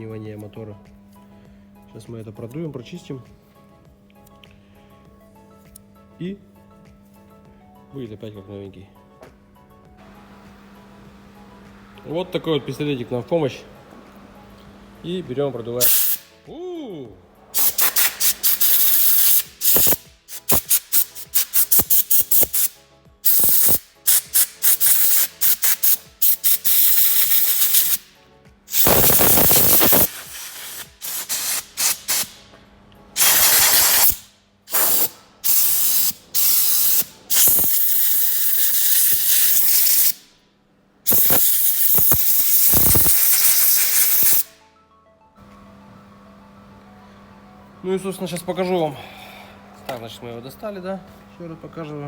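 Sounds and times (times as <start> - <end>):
compressed air blow gun blasting: 15.8 - 16.3, 17.6 - 28.1, 28.7 - 32.4, 33.2 - 40.2, 41.1 - 44.5.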